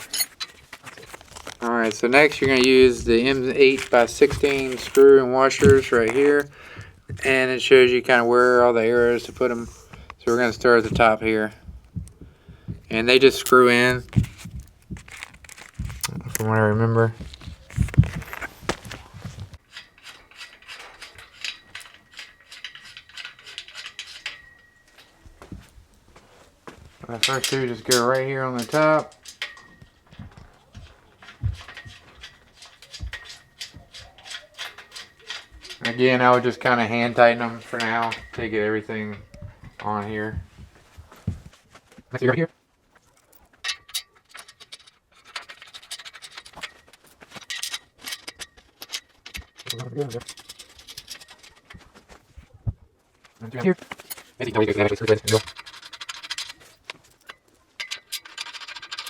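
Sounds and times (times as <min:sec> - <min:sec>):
metallic clicks and scraping of screws: 0:00.0 - 0:41.5, 0:43.0 - 0:59.0
screw threading ticks: 0:19.6 - 0:25.2, 0:27.2 - 0:38.5, 0:54.7 - 0:59.0.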